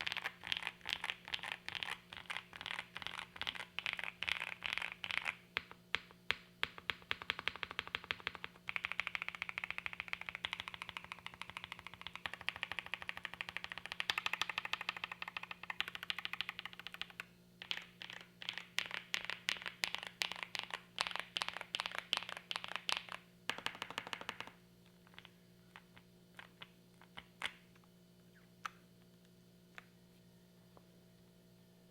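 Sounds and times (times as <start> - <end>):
mechanical keyboard typing: 0.0 - 5.3, 6.7 - 24.6.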